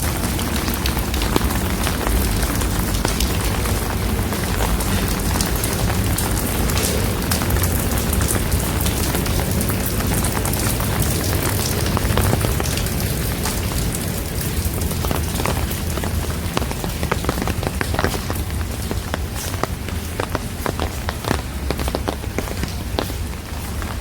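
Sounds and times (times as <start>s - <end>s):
rain falling: 0.0s - 24.0s
raindrop taps: 0.0s - 24.0s
low rumble: 1.6s - 9.8s.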